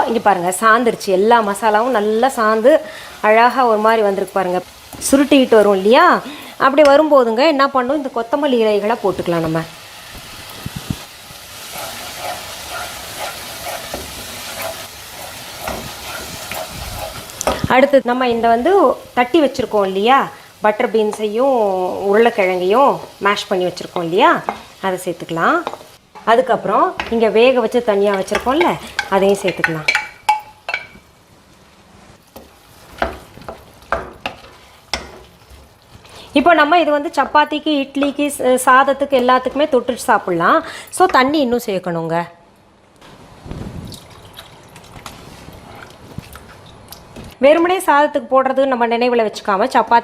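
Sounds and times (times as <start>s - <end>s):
masala sizzling in a pan: 0.0s - 41.2s
spoon stirring: 11.6s - 17.5s, 28.0s - 31.0s.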